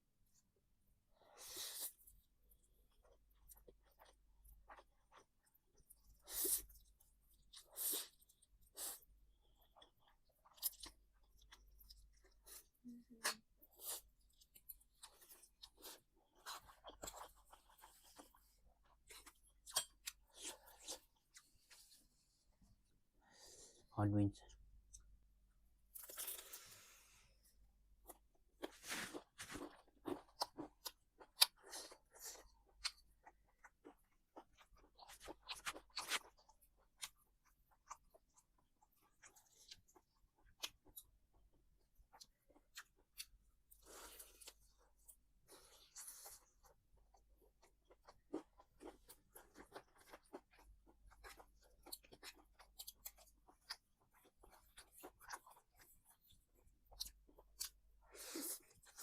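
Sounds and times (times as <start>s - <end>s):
crunching and chewing chicken: 1.2s - 22.2s, 25.9s - 26.8s, 28.0s - 59.0s.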